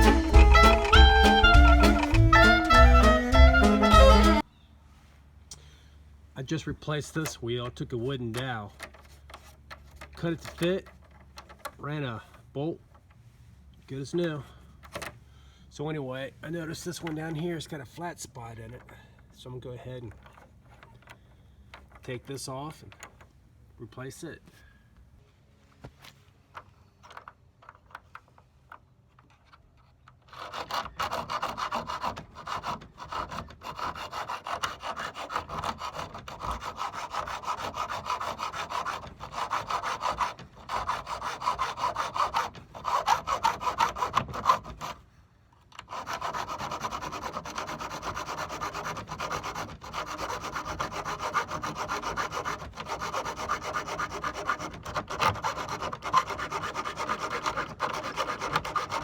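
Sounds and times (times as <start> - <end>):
hand saw cutting wood: 0.0 - 4.4, 6.9 - 11.6, 29.2 - 45.1, 45.7 - 59.0.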